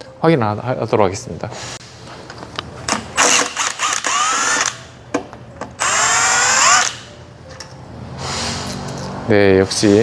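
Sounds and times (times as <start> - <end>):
power driver whining: 2.9 - 4.9, 5.8 - 7.1.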